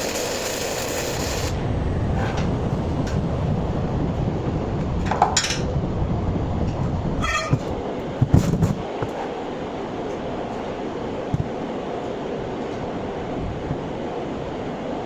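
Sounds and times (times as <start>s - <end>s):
welder arc crackling: 0.0s - 8.9s
short high squeak: 7.2s - 7.7s.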